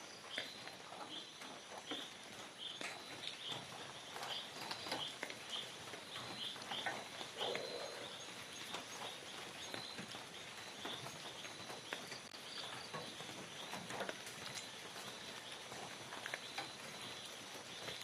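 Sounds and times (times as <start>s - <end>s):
small animals chirping: 0.3s - 10.2s.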